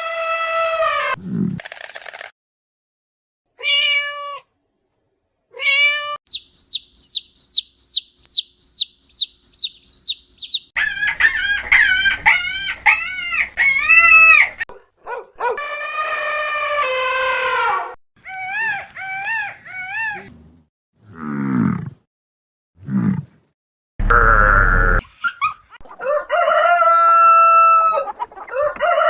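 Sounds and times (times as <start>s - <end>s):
quick high chirps: 6.3s - 10.7s
animal calls: 6.3s - 14.4s.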